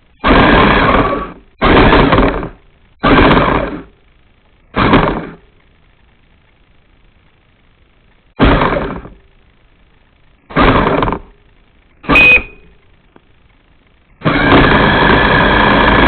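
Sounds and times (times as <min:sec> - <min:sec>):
short high beep: 0:12.0 - 0:12.8.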